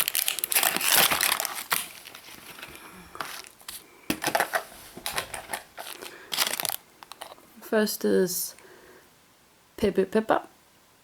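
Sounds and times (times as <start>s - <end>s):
plastic packaging crinkling: 0.0s - 7.4s.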